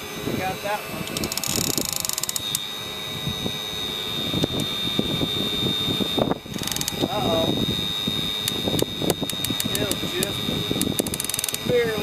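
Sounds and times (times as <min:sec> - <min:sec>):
hydraulic pump whine: 0:00.0 - 0:12.0
rapid clicking: 0:06.5 - 0:07.1, 0:08.4 - 0:11.9.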